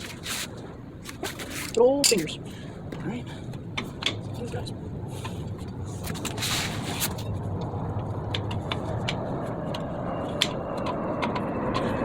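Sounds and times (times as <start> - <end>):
passing vehicle rumble: 3.6 - 12.0.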